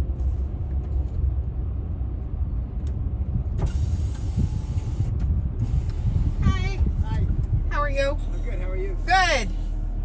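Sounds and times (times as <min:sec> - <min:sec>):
van engine and road rumble: 0:00.0 - 0:10.0.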